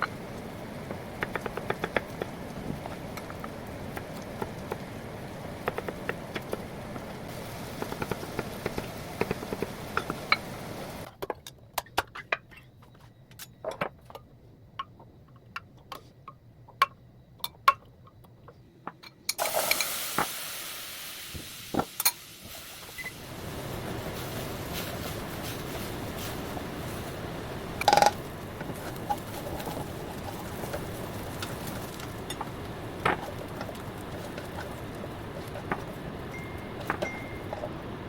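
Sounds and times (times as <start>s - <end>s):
food sizzling in a pan: 0.0s - 11.1s, 19.4s - 37.8s
utensils tapping against a pan: 27.7s - 34.8s.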